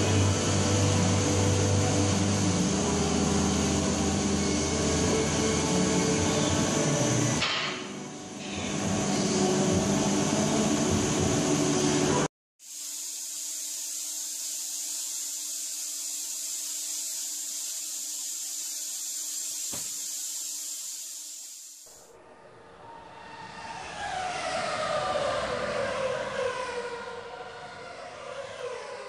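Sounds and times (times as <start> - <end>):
cnc machine cutting steel: 0.0 - 21.8
spindle whine with hiss: 0.0 - 29.0.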